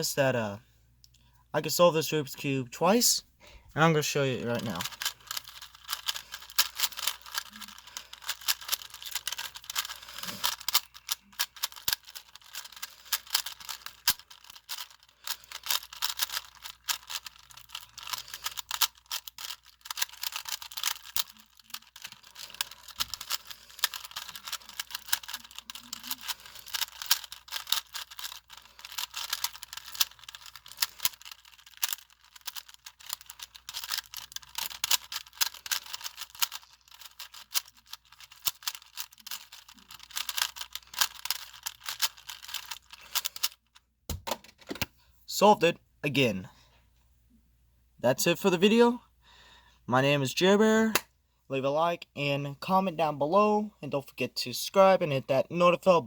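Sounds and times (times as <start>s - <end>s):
puzzle cube clicking: 4.5s - 44.9s.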